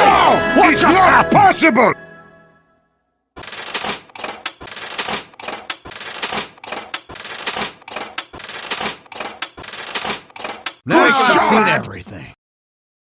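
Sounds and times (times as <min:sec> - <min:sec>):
rapid clattering: 0:03.4 - 0:10.8.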